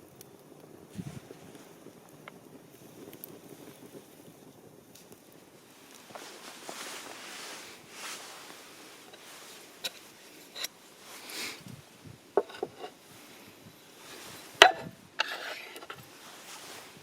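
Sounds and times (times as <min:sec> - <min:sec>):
short rubbing scrapes: 0:14.0 - 0:17.0.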